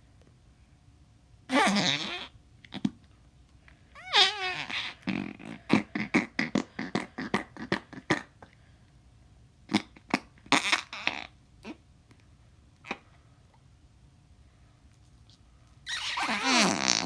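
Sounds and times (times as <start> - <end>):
putty fart noises: 1.5 - 3.0, 4.0 - 8.4, 9.7 - 11.8, 15.8 - 17.0.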